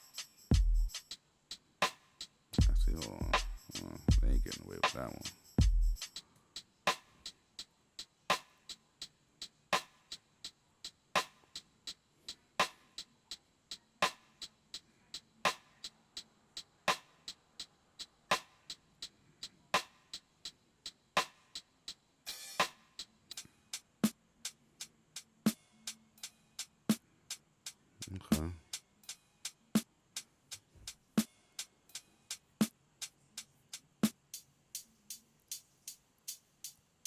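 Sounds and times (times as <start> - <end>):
drum loop: 0.0 - 1.2, 2.6 - 6.2, 28.0 - 29.6.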